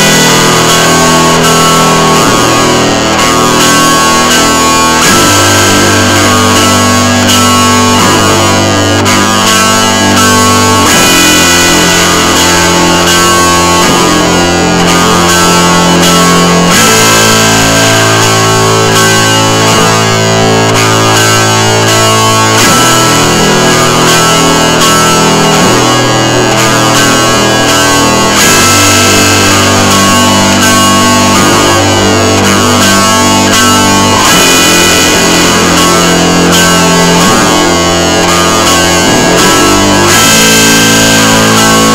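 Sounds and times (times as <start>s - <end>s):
loud guitar music: 0.0s - 41.9s.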